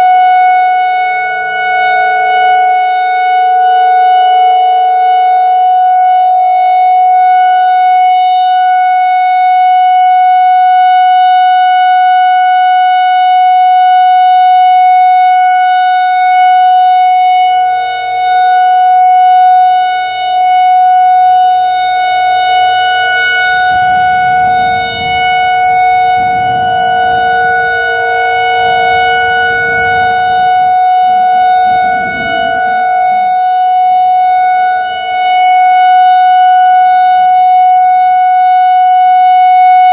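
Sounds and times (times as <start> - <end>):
warning siren steady tone: 0.0 - 39.9
low rumbling noise: 21.6 - 35.3.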